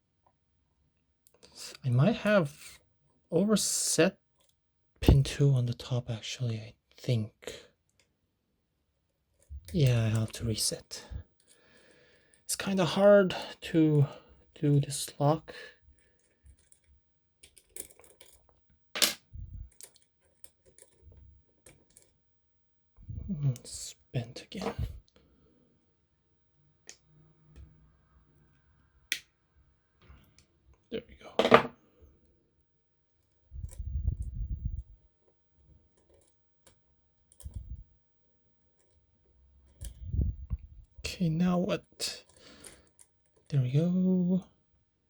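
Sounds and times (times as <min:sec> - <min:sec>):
lock being handled rumble: 0:15.9 - 0:22.2, 0:33.6 - 0:37.8
lock picks clicking: 0:16.0 - 0:18.6.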